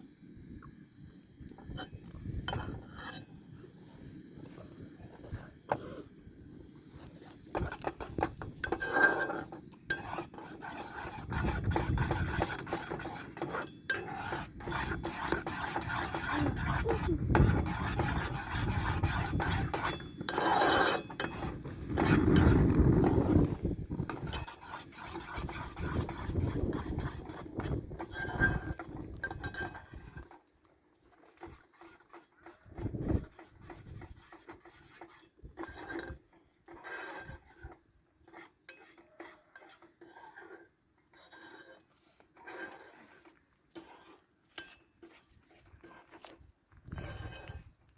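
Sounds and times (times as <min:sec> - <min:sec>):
kitchen utensils scraping: 0:07.5 - 0:30.2, 0:31.1 - 0:46.3.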